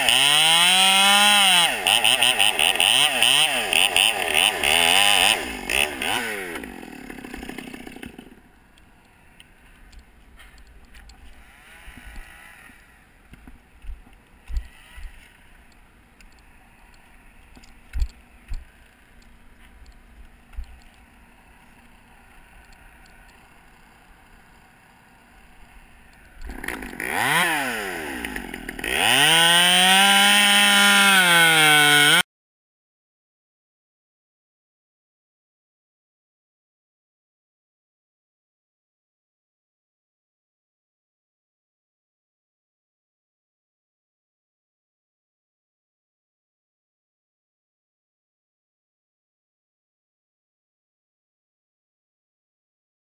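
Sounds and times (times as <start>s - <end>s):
chainsaw revving: 0.0s - 8.5s, 11.4s - 13.0s, 21.1s - 32.3s.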